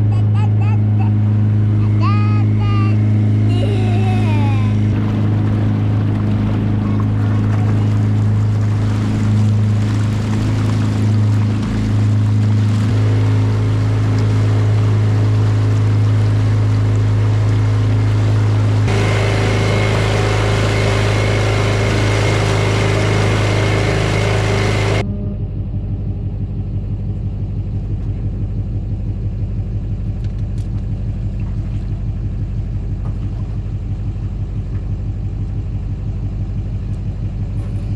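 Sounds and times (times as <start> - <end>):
water noise: 0.0 - 25.0
outboard motor running: 0.0 - 37.9.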